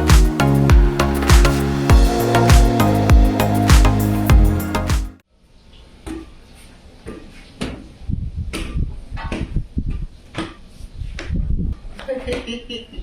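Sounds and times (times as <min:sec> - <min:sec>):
music: 0:00.0 - 0:05.2.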